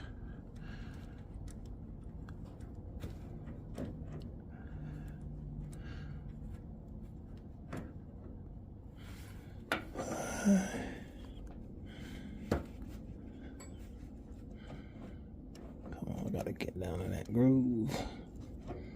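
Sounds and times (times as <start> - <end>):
person breathing: 0.0 - 1.4, 4.5 - 6.6, 8.9 - 15.5.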